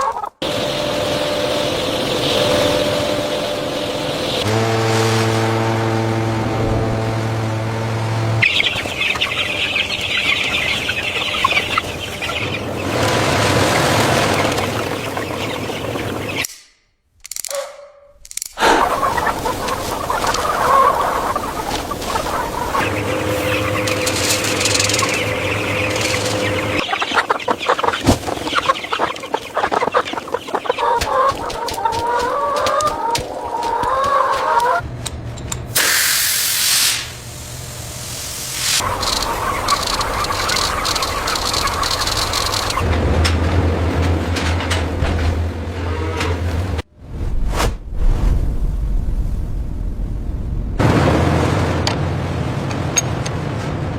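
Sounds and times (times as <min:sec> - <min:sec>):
chickens clucking and peeping: 0:00.0 - 0:04.5, 0:08.2 - 0:16.5, 0:18.6 - 0:34.9, 0:38.8 - 0:44.7
low mechanical hum: 0:00.4 - 0:16.4, 0:21.0 - 0:26.8
steady hum: 0:20.9 - 0:26.8.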